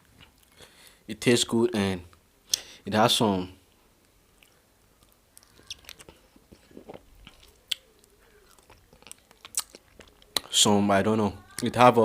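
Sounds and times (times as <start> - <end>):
wet chewing smacks and clicks: 4.3 - 10.6.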